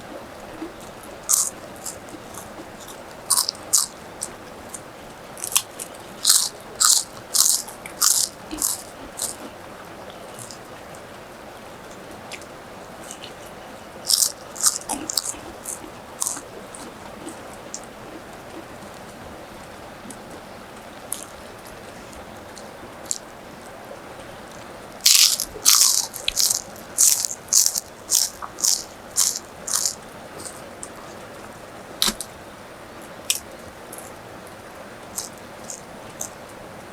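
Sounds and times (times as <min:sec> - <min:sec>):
crunching bites and chewing: 0:00.1 - 0:10.6, 0:13.1 - 0:18.7, 0:21.1 - 0:21.8, 0:22.6 - 0:23.3, 0:25.0 - 0:31.0, 0:32.0 - 0:32.3, 0:35.1 - 0:36.4.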